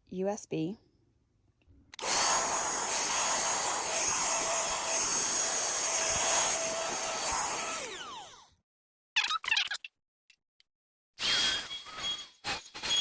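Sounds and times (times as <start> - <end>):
handheld vacuum cleaner whine: 2.0 - 8.5.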